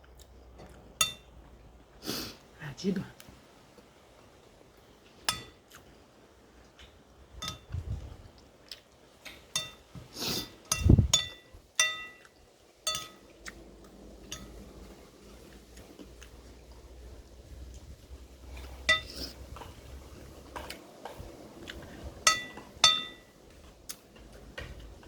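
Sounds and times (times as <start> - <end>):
cutlery clinking on a dish: 5.3 - 5.6, 7.4 - 7.7, 9.5 - 13.3, 14.2 - 14.6, 18.8 - 19.8, 22.2 - 23.4.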